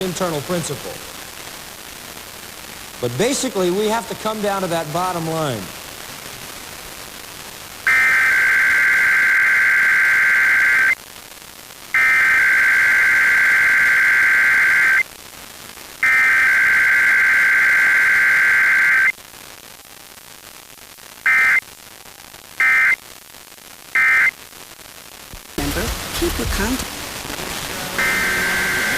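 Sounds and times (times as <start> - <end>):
high-pitched digital data bursts: 7.8 - 11.0, 11.9 - 15.0, 16.0 - 19.1, 21.2 - 21.6, 22.6 - 23.0, 24.0 - 24.3, 25.6 - 28.9.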